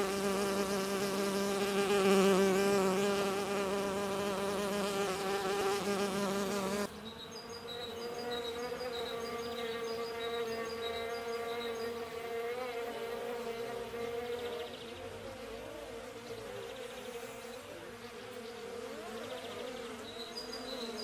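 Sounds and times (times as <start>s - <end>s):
bees buzzing: 0.0s - 14.4s.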